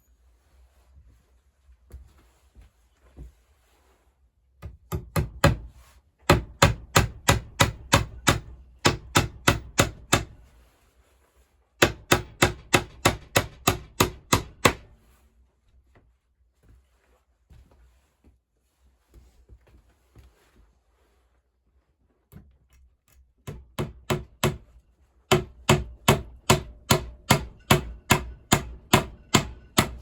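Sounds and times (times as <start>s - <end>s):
rapid sharp knocks: 25.3s - 30.0s.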